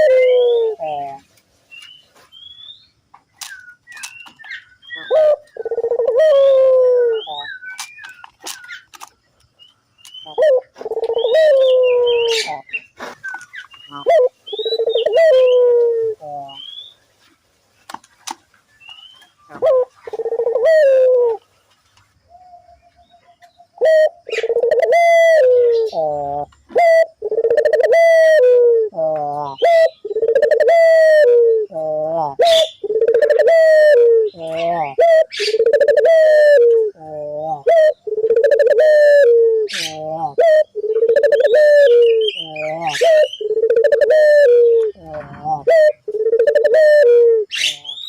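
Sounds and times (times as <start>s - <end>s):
dove cooing: 0.0s - 1.3s, 5.0s - 7.6s, 10.3s - 12.7s, 13.8s - 16.6s, 19.5s - 21.4s, 23.8s - 48.0s
small birds chirping: 0.0s - 48.0s.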